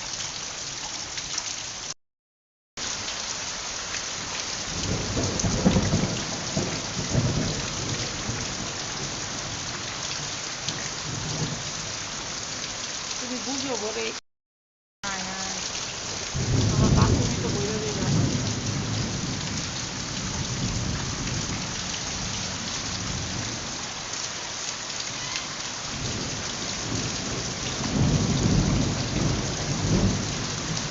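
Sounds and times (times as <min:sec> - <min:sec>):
heavy rain pouring: 0:02.8 - 0:14.2, 0:15.0 - 0:30.9
thunder rumbling: 0:04.8 - 0:09.4, 0:16.1 - 0:23.5, 0:25.9 - 0:30.9.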